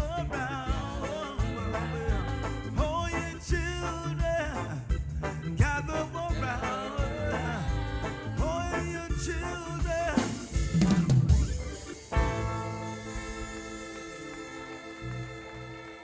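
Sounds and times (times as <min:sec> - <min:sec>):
reggae band playing: 0:00.0 - 0:16.0
drum fill: 0:05.2 - 0:13.7
sustained keyboard chord: 0:10.6 - 0:16.0.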